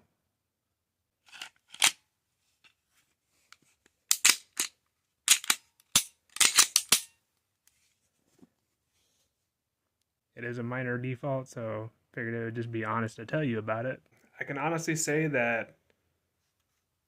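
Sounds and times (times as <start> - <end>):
pistol metallic clicks and clacks: 4.1 - 7.2.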